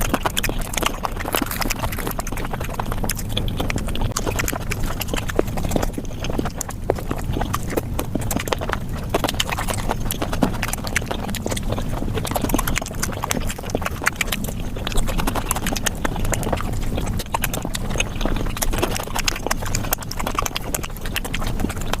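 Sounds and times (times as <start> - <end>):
sped up chewing and mouth clicks: 0.0 - 22.0.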